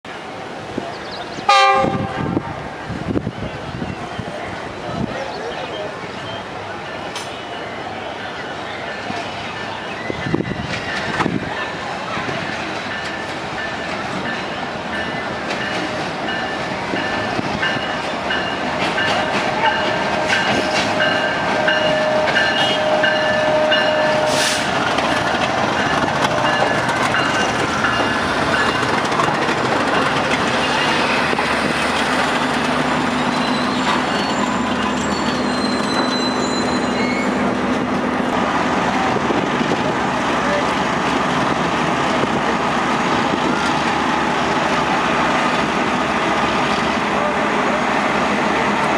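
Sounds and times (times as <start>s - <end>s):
train rumble and wheel clatter: 0.1s - 48.9s
high-pitched wheel squeal: 33.2s - 37.4s.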